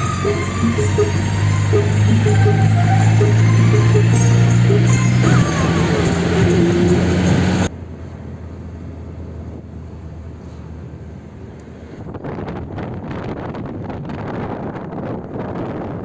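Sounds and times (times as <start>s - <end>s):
background music: 0.0s - 7.7s
wind buffeting microphone: 12.0s - 16.0s.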